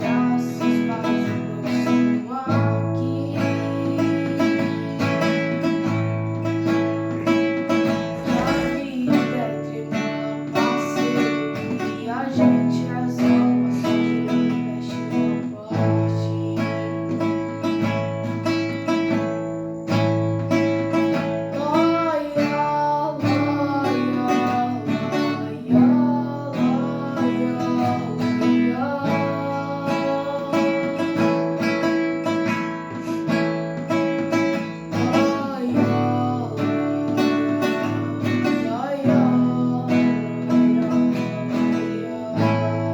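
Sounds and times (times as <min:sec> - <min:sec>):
acoustic guitar playing: 0:00.0 - 0:42.9.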